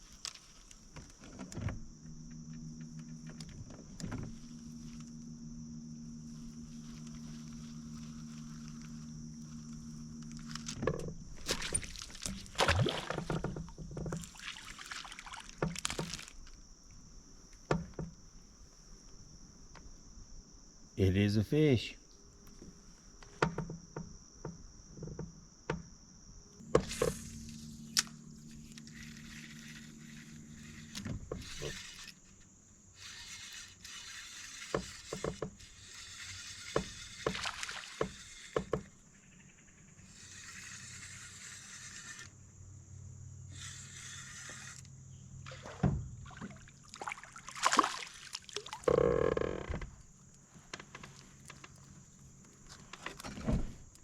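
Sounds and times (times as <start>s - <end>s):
high insect drone: 0.0s - 54.0s
fishing gear clattering in boat: 9.8s - 14.4s.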